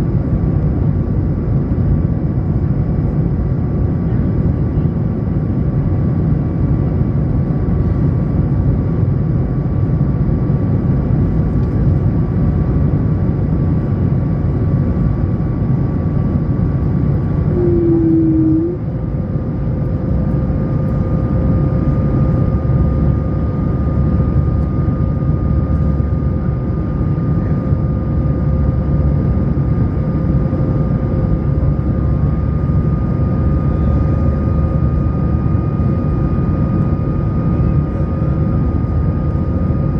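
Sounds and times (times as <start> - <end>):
airplane cabin engine rumble: 0.0 - 39.9
turbofan engine whine: 0.0 - 39.9
short tone: 17.5 - 19.0.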